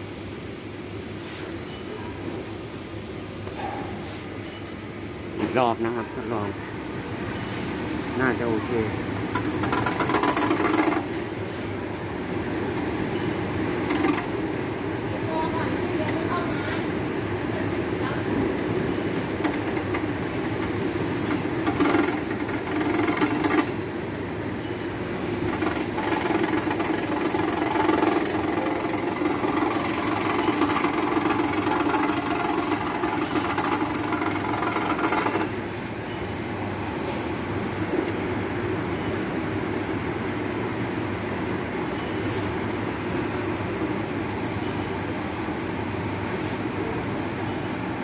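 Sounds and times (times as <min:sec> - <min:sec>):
air conditioner fan humming: 0:00.0 - 0:42.0.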